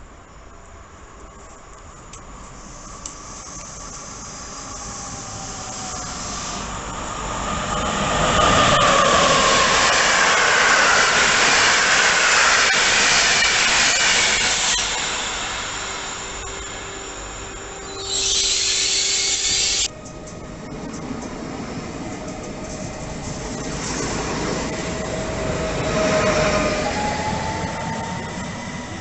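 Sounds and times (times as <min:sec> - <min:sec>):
train passing on rails: 0:00.0 - 0:29.0
pitch-bending whine: 0:09.4 - 0:29.0.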